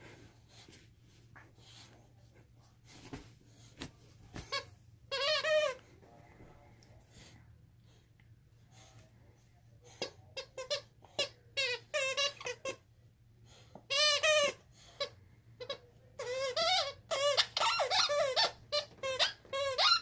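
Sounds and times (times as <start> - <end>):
dog toy squeaking: 4.5 - 5.8, 15.6 - 20.0.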